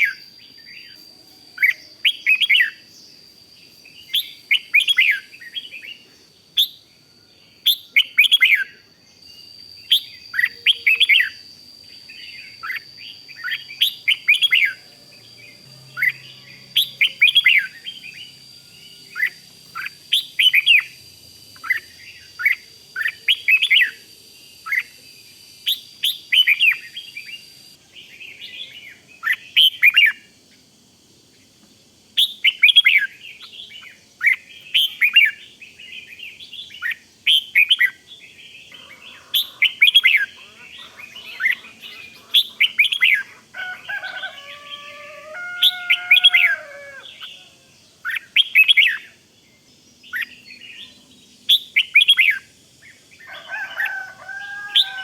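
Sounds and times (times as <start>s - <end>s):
bird chirping rapid phrases: 32.2s - 43.5s.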